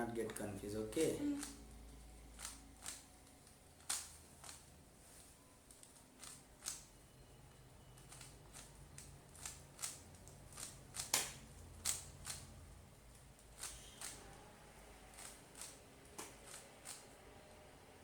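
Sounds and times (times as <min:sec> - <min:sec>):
puzzle cube plastic clicks: 0:02.4 - 0:04.7, 0:08.0 - 0:12.5.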